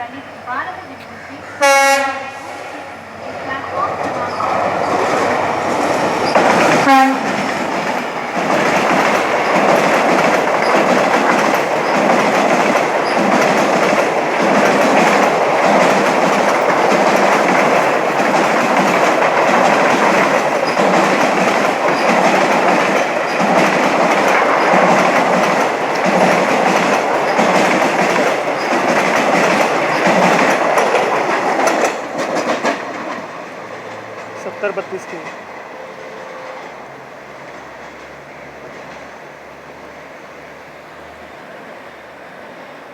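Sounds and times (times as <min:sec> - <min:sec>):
train passing at speed: 0:00.0 - 0:42.9
wheels clacking over rail joints: 0:03.2 - 0:35.6.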